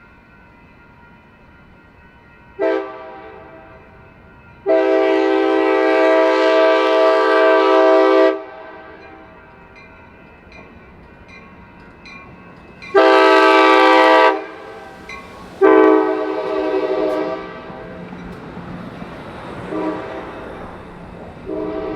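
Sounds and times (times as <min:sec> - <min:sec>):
locomotive air horn blasts: 0:02.6 - 0:03.7, 0:04.7 - 0:09.0, 0:12.9 - 0:14.9, 0:15.6 - 0:18.0, 0:19.7 - 0:20.3, 0:21.5 - 0:21.9.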